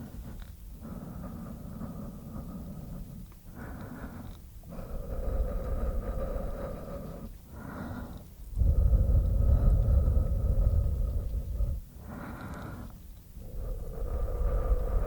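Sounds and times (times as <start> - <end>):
low rumble: 8.5 - 12.0, 13.0 - 15.0.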